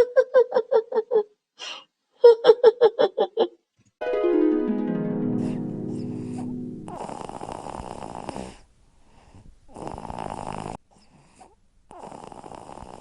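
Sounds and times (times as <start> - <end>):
cartoon snoring: 9.7 - 10.8, 11.9 - 13.0.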